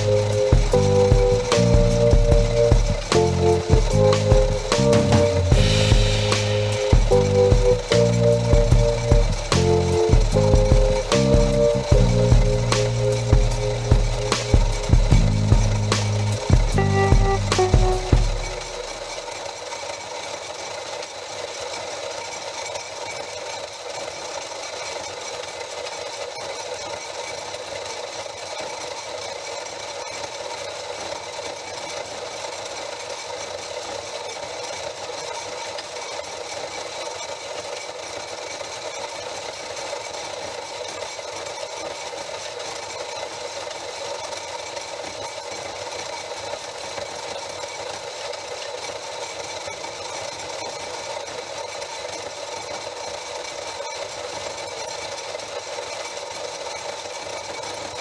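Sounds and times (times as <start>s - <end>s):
machine running with light rattle: 0.0s - 19.2s.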